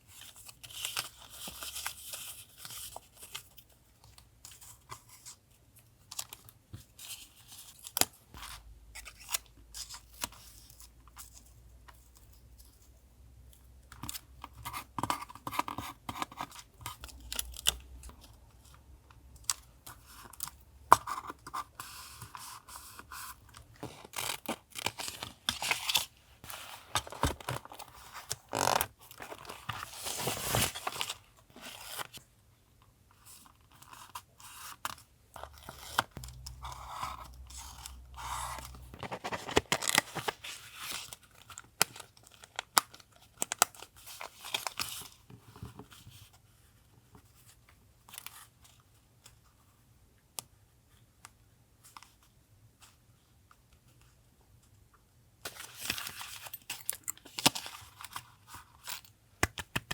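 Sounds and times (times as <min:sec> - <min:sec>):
paper rustling and crinkling: 0:21.2 - 0:32.2, 0:33.4 - 0:46.4.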